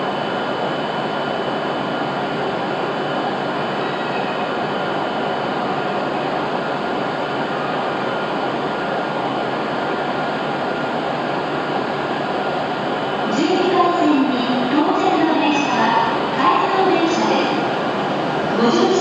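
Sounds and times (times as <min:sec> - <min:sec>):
train rushing running noise: 0:04.6 - 0:19.0.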